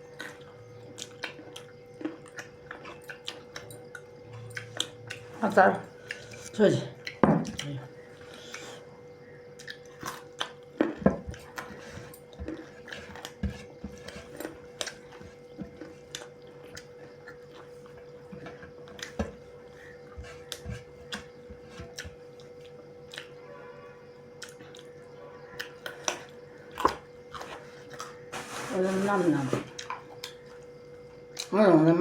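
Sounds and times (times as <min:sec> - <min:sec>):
faint steady hum: 0:00.0 - 0:32.0
chewing smacks: 0:00.2 - 0:05.3, 0:09.6 - 0:11.7, 0:21.9 - 0:23.4.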